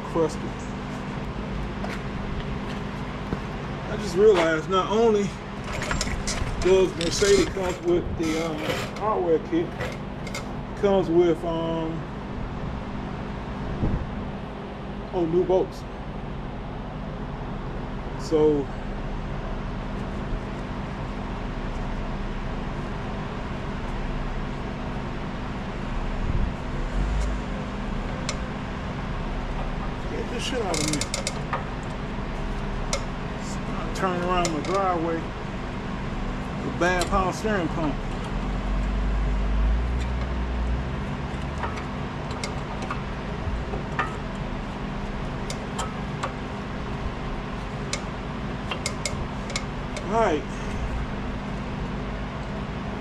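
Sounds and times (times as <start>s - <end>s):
car engine humming: 0.0s - 53.0s
loud low rumbles: 10.4s - 53.0s
metallic clicks of brake parts: 30.6s - 32.0s, 34.2s - 34.9s, 40.0s - 43.1s, 47.9s - 50.1s.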